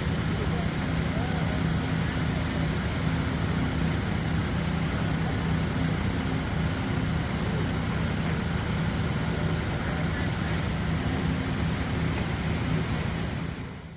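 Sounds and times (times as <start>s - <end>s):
constant rushing noise: 0.0s - 13.9s
fire truck engine humming: 0.0s - 13.9s.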